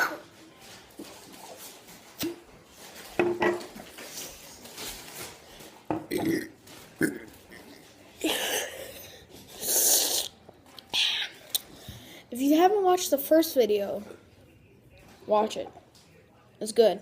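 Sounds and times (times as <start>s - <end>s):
person burping: 6.0s - 9.0s.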